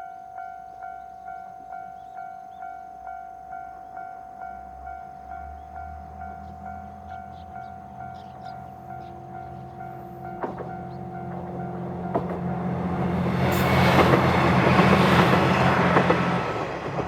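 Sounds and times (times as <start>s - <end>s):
level crossing warning bell: 0.0s - 16.4s
diesel railcar engine hum: 0.0s - 17.0s.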